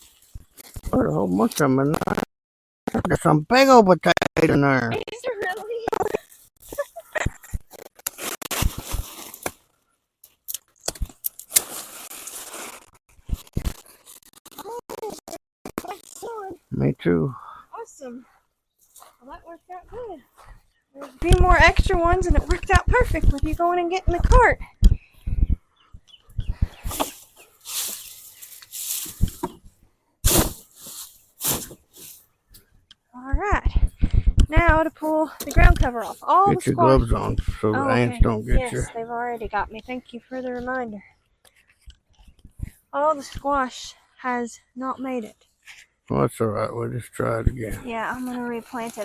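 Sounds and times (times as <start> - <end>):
hands digging through soil: 7.8 - 9.6, 26.8 - 29.4, 48.1 - 49.0.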